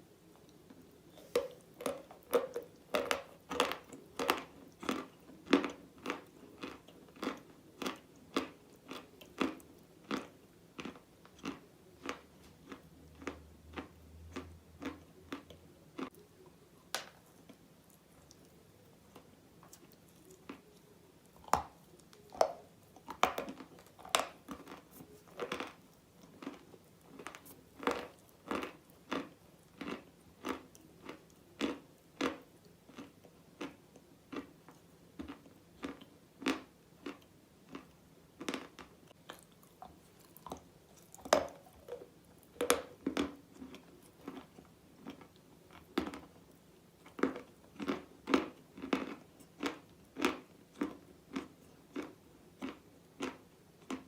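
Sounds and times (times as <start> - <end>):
person biting and chewing crunchily: 1.1 - 16.2, 21.4 - 34.5, 47.1 - 54.0.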